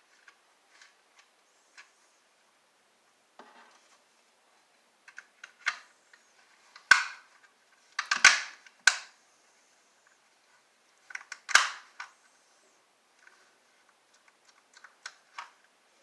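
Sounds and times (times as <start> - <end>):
remote control clicks and snaps: 8.0 - 9.1, 11.1 - 12.1.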